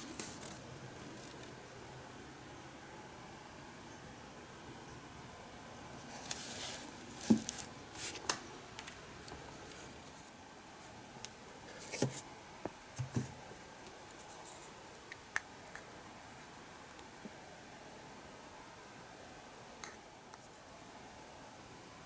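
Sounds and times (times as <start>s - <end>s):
soft rustles: 6.0s - 8.3s.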